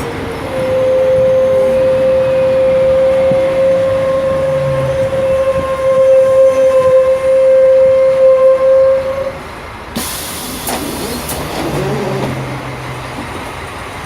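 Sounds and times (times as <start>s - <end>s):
loud steady tone: 0.0s - 9.4s.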